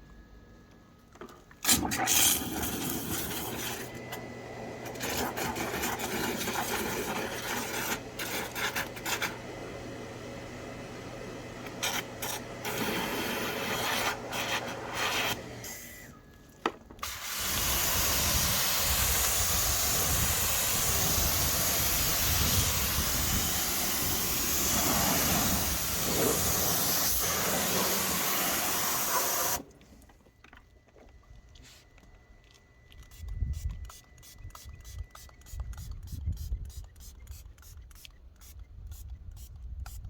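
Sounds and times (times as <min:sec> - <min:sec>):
loud hiss of spray: 0:11.8 - 0:15.9, 0:17.0 - 0:29.6.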